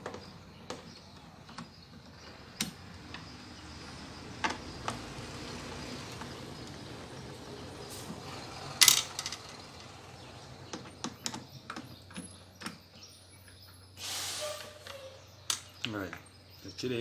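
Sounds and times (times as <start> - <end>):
metal wrench and screws clinking: 8.8 - 9.6.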